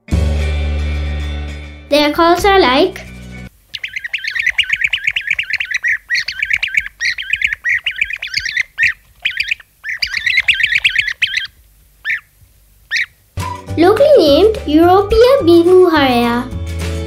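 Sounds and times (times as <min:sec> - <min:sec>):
bird calls in rolling notes: 0:03.7 - 0:14.4.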